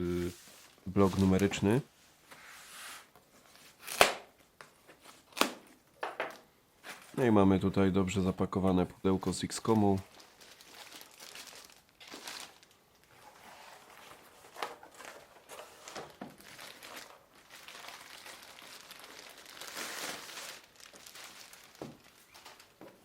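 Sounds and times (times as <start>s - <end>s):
packaging crinkling: 9.6s - 23.0s.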